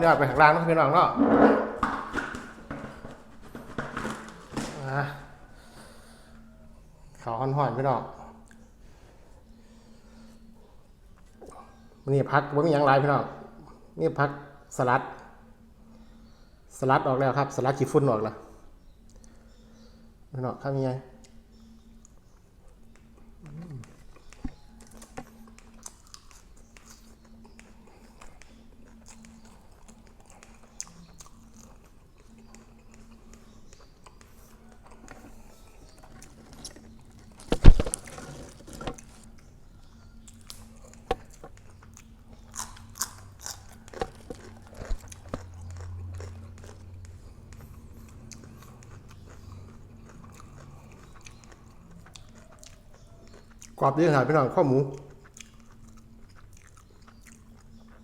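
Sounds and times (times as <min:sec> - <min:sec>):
chewing crispy pork: 0:21.2 - 0:58.0.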